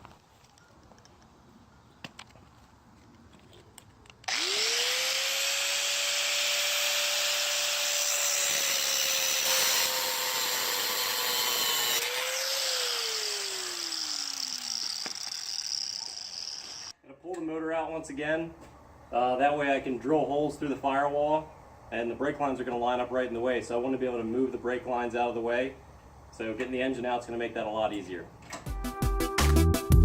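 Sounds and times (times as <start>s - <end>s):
power tool motor whine: 4.3s - 16.9s.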